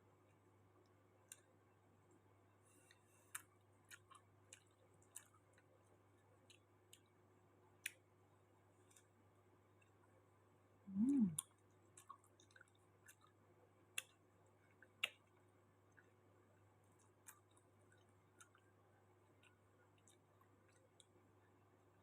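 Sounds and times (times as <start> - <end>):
chewing clicks and smacks: 1.2 - 2.2, 2.9 - 7.2, 7.8 - 8.1, 8.8 - 9.2, 11.4 - 16.2, 16.8 - 21.2
person humming: 10.9 - 11.4.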